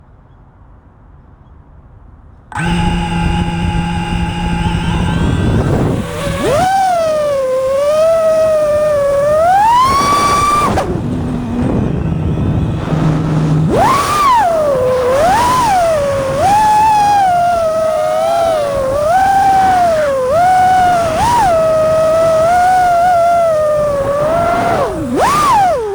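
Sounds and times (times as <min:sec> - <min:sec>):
quadcopter motors whining: 0:02.5 - 0:25.9.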